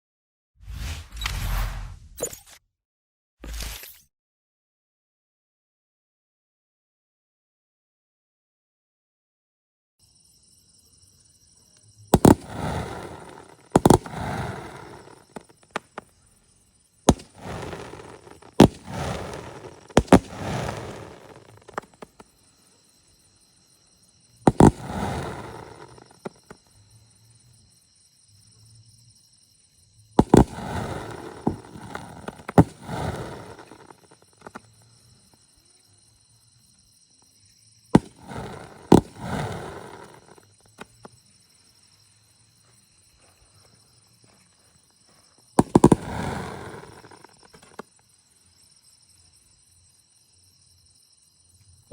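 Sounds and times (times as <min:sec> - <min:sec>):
crackling hissing firework bursts: 0:00.6 - 0:02.2, 0:12.1 - 0:16.1, 0:17.1 - 0:22.3, 0:24.4 - 0:26.4, 0:30.2 - 0:34.6, 0:38.0 - 0:40.4, 0:45.6 - 0:47.8
firework bangs: 0:12.1 - 0:16.0, 0:17.1 - 0:22.3, 0:24.4 - 0:26.6, 0:30.2 - 0:34.6, 0:38.0 - 0:40.4, 0:45.6 - 0:47.8.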